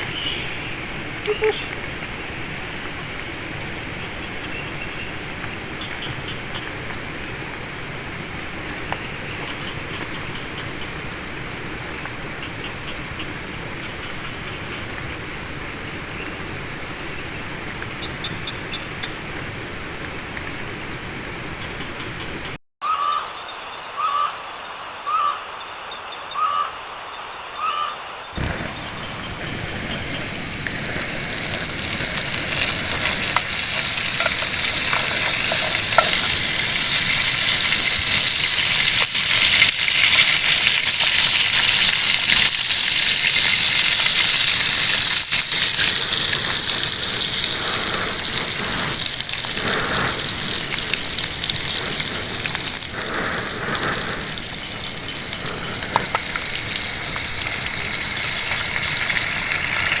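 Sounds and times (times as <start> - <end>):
food sizzling in a pan: 28.4 - 60.0.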